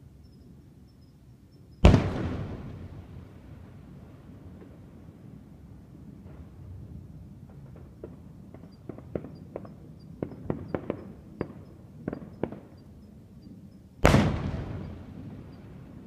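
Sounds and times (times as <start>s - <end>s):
fireworks popping and crackling: 1.8s - 3.0s, 7.4s - 12.8s
firework boom: 1.8s - 3.3s.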